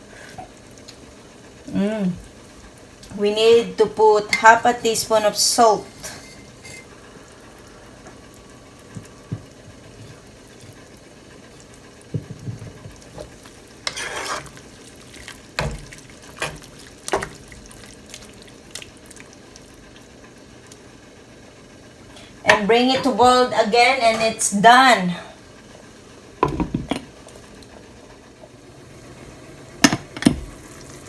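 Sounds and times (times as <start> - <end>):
spoon stirring soup: 5.8 - 7.0, 8.8 - 19.7
spoon clinking against pot: 5.9 - 6.9.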